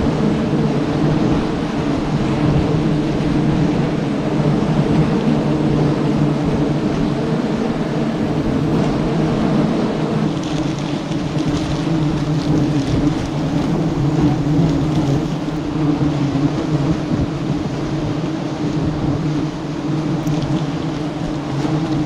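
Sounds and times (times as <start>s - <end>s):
bees buzzing: 4.9s - 17.0s, 19.2s - 22.0s.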